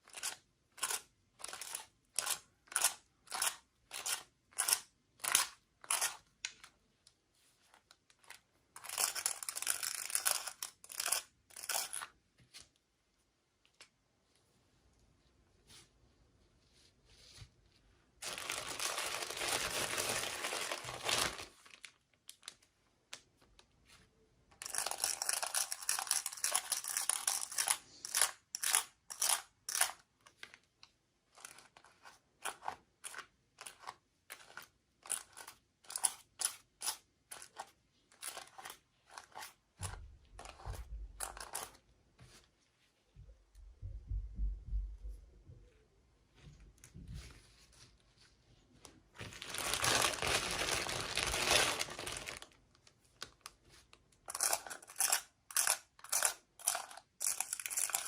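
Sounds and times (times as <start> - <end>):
packaging crinkling: 18.2 - 22.6, 49.2 - 53.6
packaging tearing and rustling: 18.2 - 22.6, 49.2 - 52.6.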